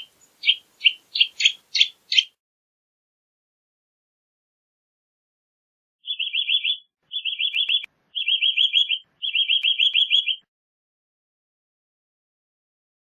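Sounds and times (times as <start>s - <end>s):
bird calling rapid high notes: 6.0s - 10.5s.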